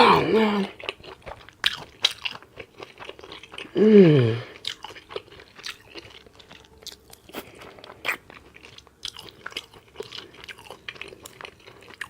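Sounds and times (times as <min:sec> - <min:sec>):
person chewing with mouth open: 0:00.6 - 0:12.0.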